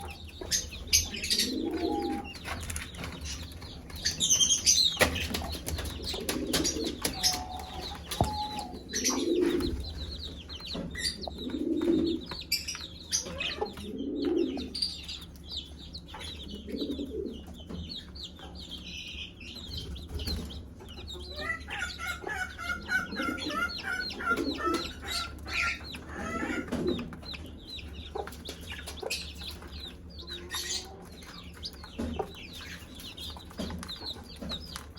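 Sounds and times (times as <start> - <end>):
chicks peeping: 0.0 - 34.9
hen clucking low: 21.2 - 27.0.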